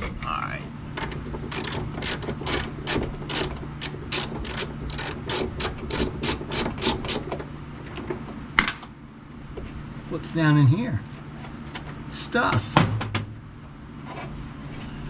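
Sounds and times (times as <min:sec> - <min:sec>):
steady low hum: 0:00.0 - 0:15.0
ratchet wrench clicking: 0:01.0 - 0:06.0.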